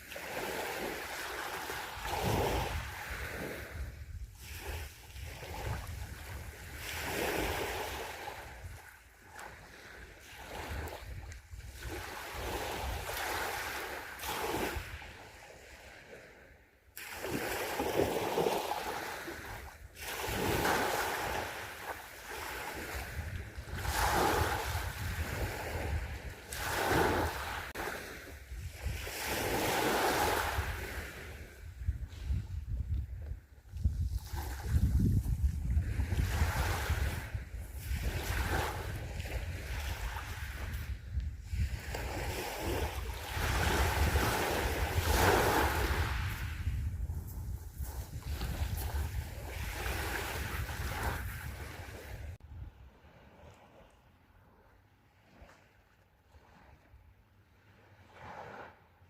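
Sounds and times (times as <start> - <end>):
sea waves breaking on shore: 0.0 - 32.8, 34.0 - 58.9.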